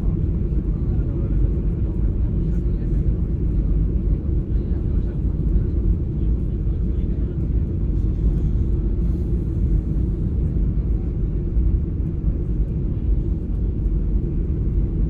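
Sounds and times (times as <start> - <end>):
jet engine cabin rumble: 0.0 - 15.0.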